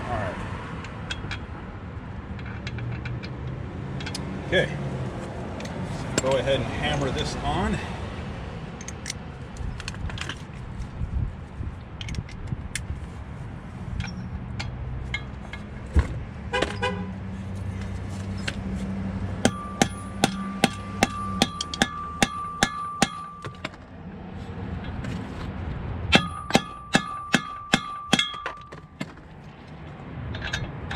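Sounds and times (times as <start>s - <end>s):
hammer striking metal socket: 19.4s - 23.8s, 26.1s - 29.2s.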